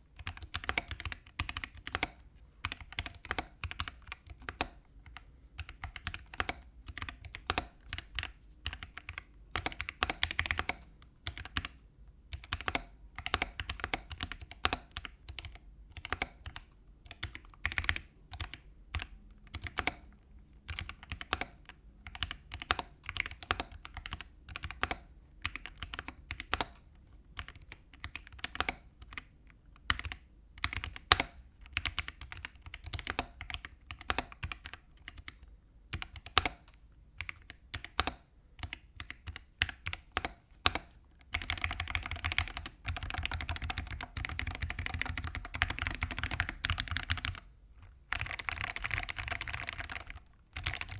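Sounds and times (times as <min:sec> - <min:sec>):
mechanical keyboard keystroke clacks: 0:00.2 - 0:11.7, 0:29.9 - 0:35.4, 0:36.0 - 0:47.5, 0:48.1 - 0:50.9.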